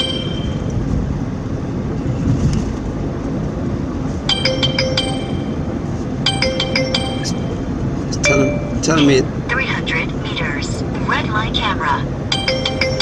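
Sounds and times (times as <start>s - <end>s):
car cabin road rumble: 0.0s - 12.4s.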